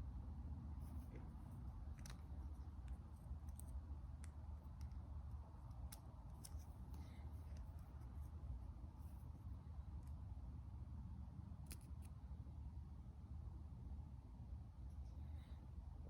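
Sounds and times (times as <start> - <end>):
low steady hum: 0.0 - 16.0
light clicks and taps: 0.9 - 8.2.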